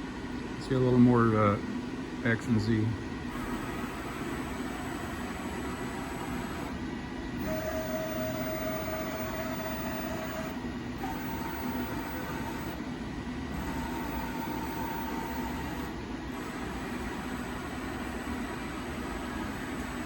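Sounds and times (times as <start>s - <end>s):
axis drive whine: 0.0s - 20.0s
lathe running: 3.4s - 13.0s, 13.6s - 20.0s.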